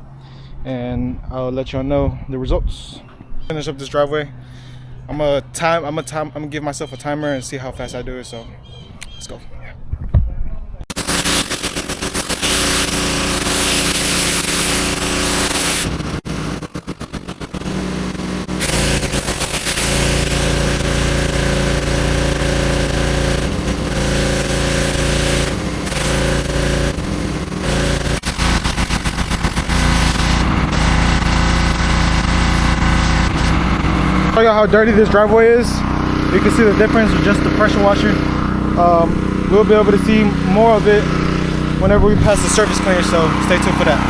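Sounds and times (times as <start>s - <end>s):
pressure washer engine running: 10.9s - 44.0s
water jet spraying concrete: 10.9s - 44.0s.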